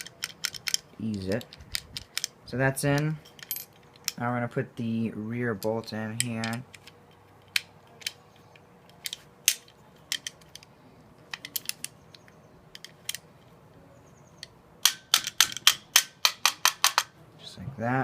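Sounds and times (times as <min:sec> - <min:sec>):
clicks and taps of parts fitted: 0:14.4 - 0:17.1.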